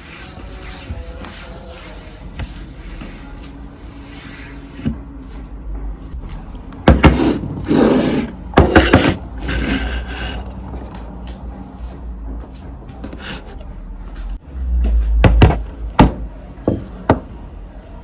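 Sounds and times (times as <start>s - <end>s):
rubbing and scraping: 0.0s - 5.5s, 6.9s - 11.1s.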